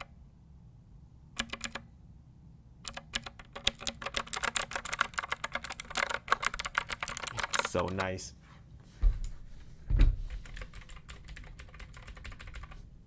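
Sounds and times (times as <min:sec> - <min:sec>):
mechanical keyboard key clicks: 0:01.4 - 0:01.8, 0:02.8 - 0:08.1.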